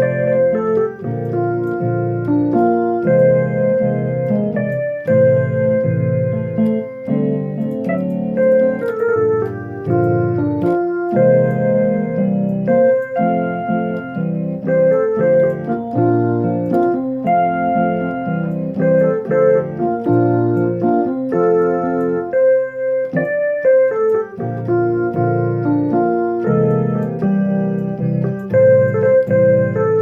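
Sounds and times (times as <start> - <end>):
bass line: 0.0 - 22.4
keyboard piano chords: 0.0 - 30.0.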